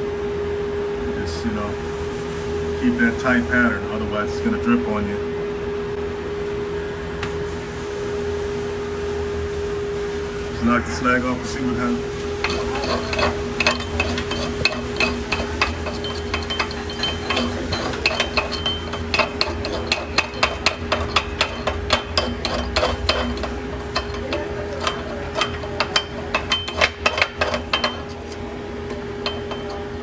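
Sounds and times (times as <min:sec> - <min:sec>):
steady hum: 0:08.1 - 0:30.0
chipping hammer tapping metal: 0:11.8 - 0:30.0.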